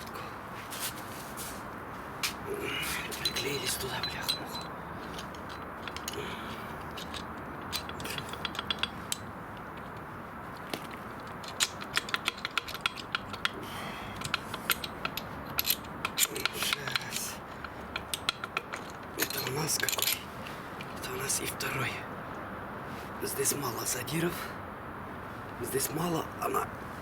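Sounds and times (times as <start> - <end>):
metallic clicks of hand tools: 3.1 - 10.1, 10.7 - 21.0.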